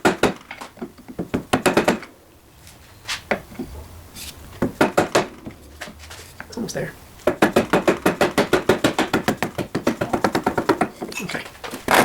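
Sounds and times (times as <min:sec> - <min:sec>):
hammer knocking on metal pulley: 0:01.2 - 0:02.1, 0:04.6 - 0:05.5, 0:07.2 - 0:11.2.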